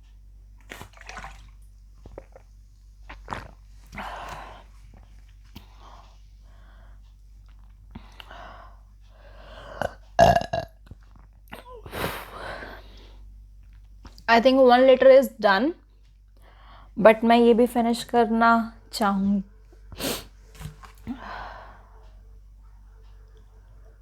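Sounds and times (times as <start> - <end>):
woman burping: 9.8 - 10.8.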